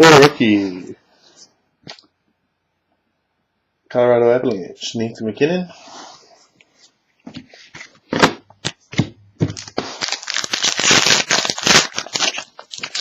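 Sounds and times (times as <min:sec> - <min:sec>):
wrapper tearing and crinkling: 0:09.5 - 0:13.0.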